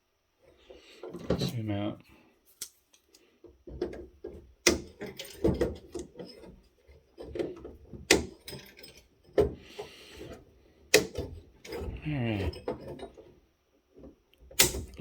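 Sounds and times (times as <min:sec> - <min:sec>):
metal hardware clicks and knocks: 0:03.6 - 0:06.6.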